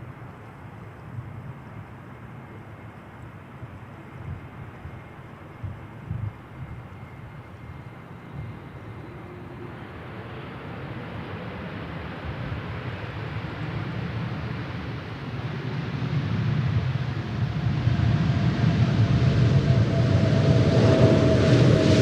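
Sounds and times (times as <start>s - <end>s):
jet engines rushing: 7.6s - 22.0s.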